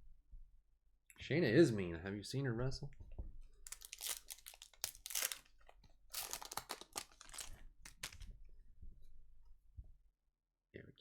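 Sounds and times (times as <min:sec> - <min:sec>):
card pack wrappers tearing: 0:03.7 - 0:08.2
cards being handled: 0:03.7 - 0:08.3.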